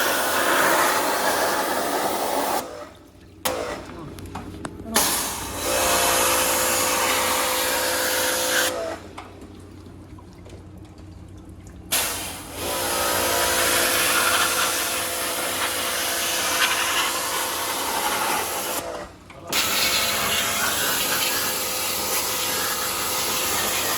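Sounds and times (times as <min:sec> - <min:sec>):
pressure washer spraying water: 0:00.0 - 0:02.6, 0:05.0 - 0:08.8, 0:11.9 - 0:18.9, 0:19.5 - 0:23.9
motor hum: 0:00.0 - 0:23.9.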